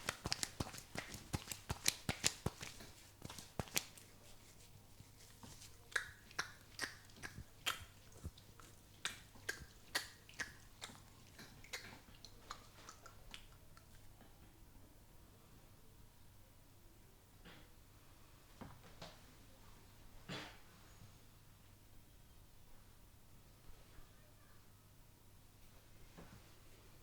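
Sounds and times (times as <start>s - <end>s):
hands snapping clicks: 0.0s - 4.0s.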